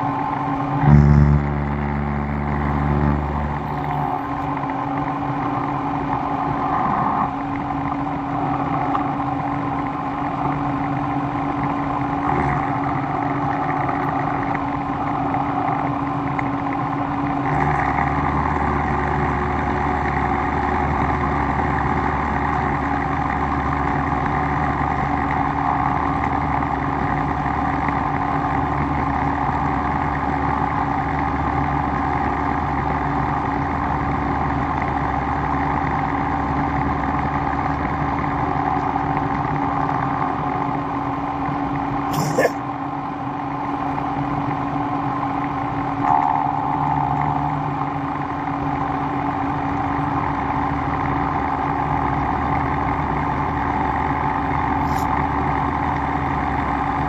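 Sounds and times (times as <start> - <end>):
deeper low hum: 0.0 - 27.4, 43.9 - 57.0.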